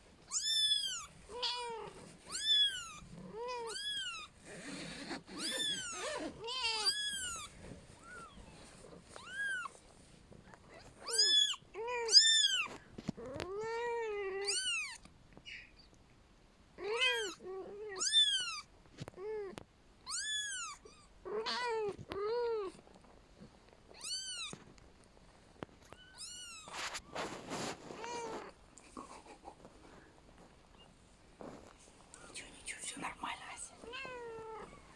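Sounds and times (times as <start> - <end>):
kitten meowing: 0.3 - 8.4, 11.0 - 12.7, 13.5 - 15.0, 16.8 - 18.6, 20.0 - 22.5, 24.0 - 24.6, 25.9 - 26.9.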